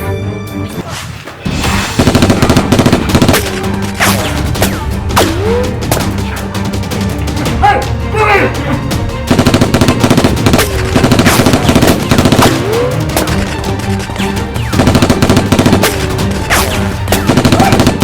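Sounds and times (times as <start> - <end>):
automatic gunfire: 2.0 - 3.6, 9.3 - 13.3, 14.7 - 18.0.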